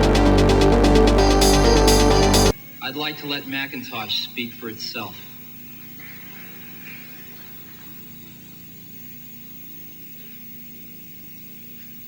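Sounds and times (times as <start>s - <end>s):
low electrical mains hum: 2.5s - 12.0s.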